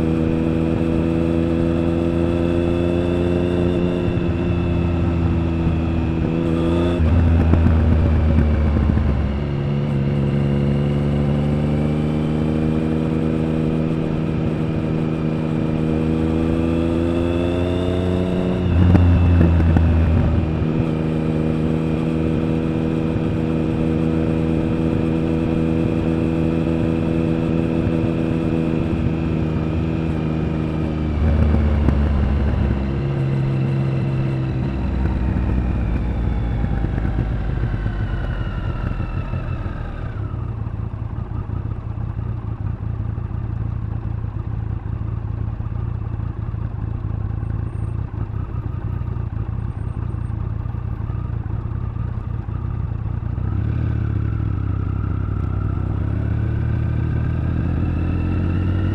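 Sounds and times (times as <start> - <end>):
motorcycle engine revving: 0.0 - 58.9
motorcycle engine idling: 31.2 - 57.5.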